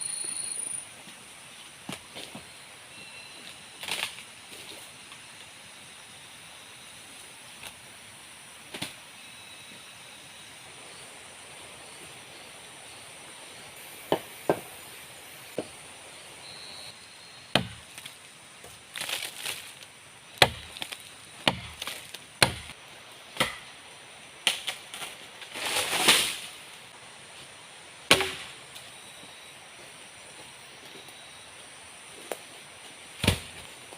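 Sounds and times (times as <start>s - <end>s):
blade chopping wood: 17.6s - 18.1s, 20.4s - 22.8s, 28.1s - 28.5s.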